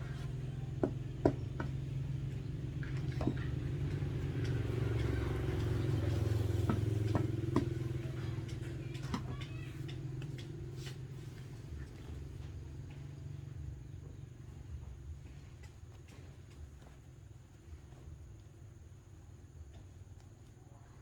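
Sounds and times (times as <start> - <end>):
engine humming: 0.0 - 15.4.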